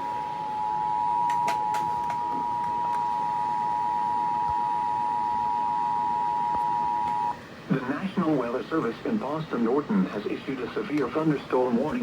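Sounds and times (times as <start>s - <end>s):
two-tone alarm: 0.0s - 7.4s.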